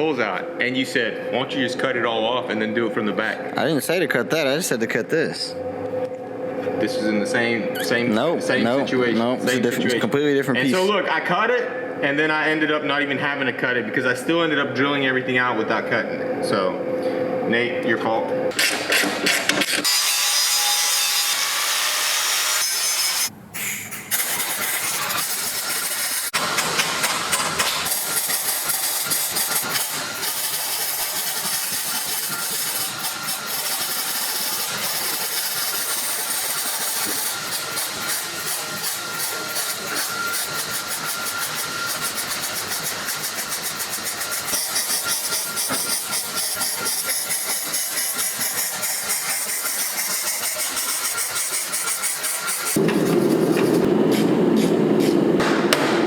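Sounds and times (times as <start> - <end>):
tool hissing and crackling on metal: 18.5 - 56.0.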